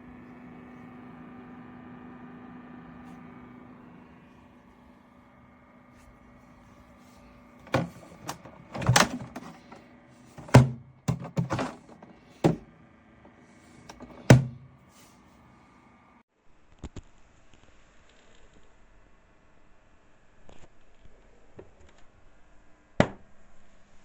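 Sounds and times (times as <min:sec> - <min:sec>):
mini fridge fan hum: 0:00.0 - 0:16.2
knocks and thunks: 0:07.6 - 0:09.8, 0:10.4 - 0:12.7, 0:13.9 - 0:14.7.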